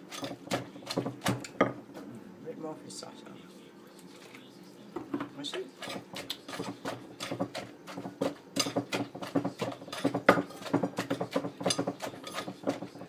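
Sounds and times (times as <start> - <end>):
pestle pounding in a mortar: 0.0 - 1.8, 5.7 - 13.0.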